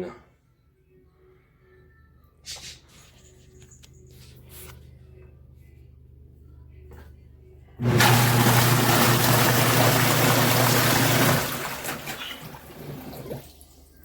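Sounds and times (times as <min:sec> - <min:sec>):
washing machine motor hum: 0:07.0 - 0:14.0
water churning and sloshing: 0:08.0 - 0:14.0.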